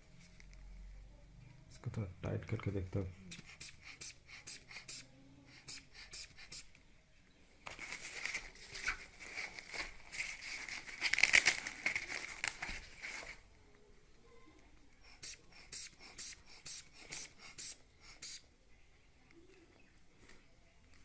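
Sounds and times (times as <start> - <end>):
air hissing from inflation bulb valve: 3.3 - 6.7, 15.1 - 18.4.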